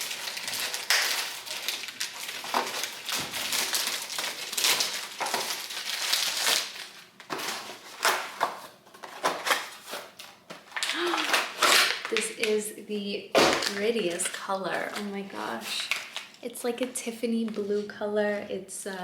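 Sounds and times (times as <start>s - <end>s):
packaging rustling and crinkling: 0.0s - 12.6s, 13.4s - 16.4s.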